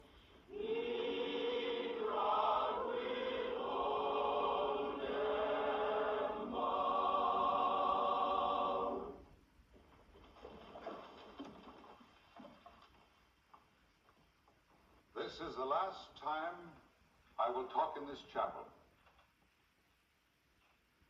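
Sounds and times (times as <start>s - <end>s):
choir singing slow chords: 0.0s - 9.4s.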